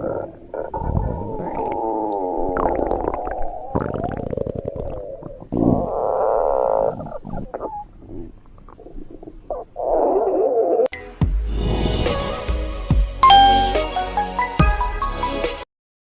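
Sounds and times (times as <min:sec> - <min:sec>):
stomach growling and gurgling: 0:00.0 - 0:10.9.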